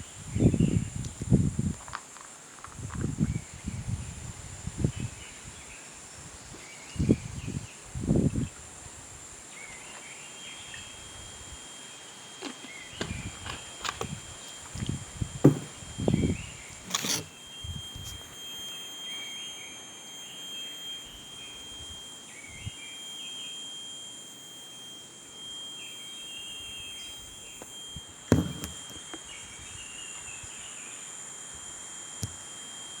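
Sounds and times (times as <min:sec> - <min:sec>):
high-pitched steady tone: 0:10.4 - 0:33.0
dull thumps: 0:15.4 - 0:17.3, 0:28.3 - 0:29.2.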